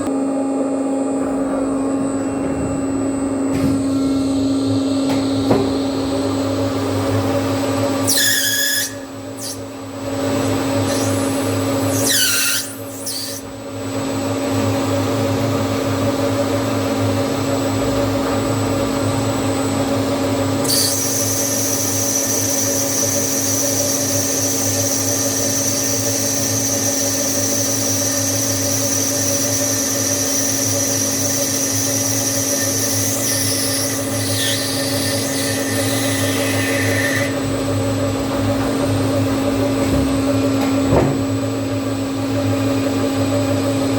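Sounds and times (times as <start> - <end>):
gliding machine whine: 0.0 - 13.4
machine mechanical hum: 0.0 - 43.9.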